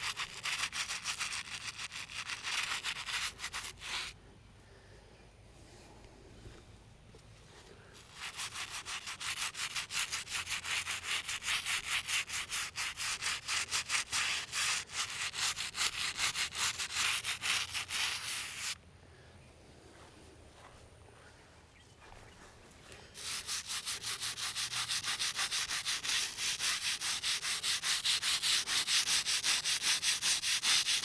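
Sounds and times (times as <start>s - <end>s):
brush scrubbing wet stone: 0.0s - 4.1s, 8.0s - 18.8s, 23.2s - 31.0s.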